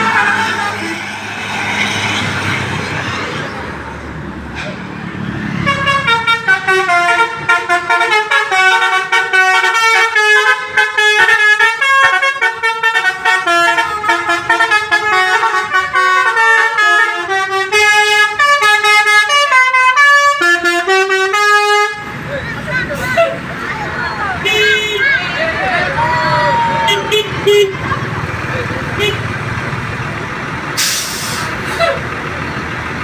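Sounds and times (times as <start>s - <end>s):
multi-tone musical horn melody: 5.6s - 22.2s.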